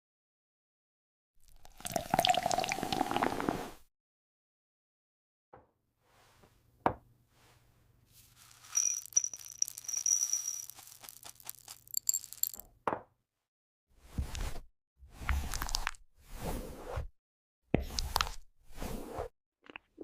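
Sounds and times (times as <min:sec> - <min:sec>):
small glass clinks: 0:08.8 - 0:10.8, 0:11.9 - 0:12.6.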